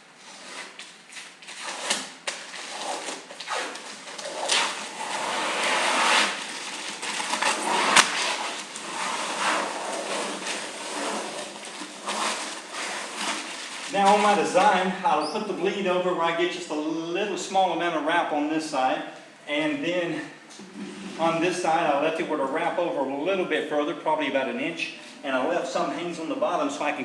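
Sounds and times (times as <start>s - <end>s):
vinyl film scraping and rustling: 0.2s - 14.8s.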